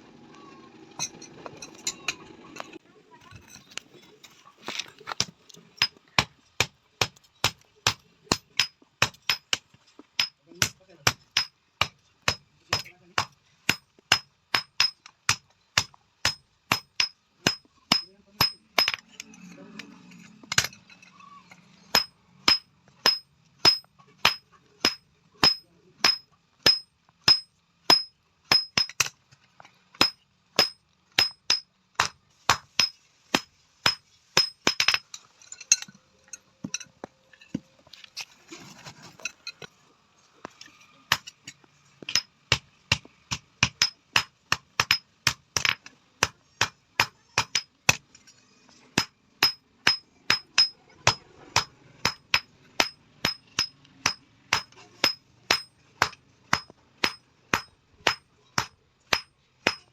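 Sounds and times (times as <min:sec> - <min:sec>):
faint scraping and shuffling: 0:01.5 - 0:06.2, 0:35.1 - 0:42.1.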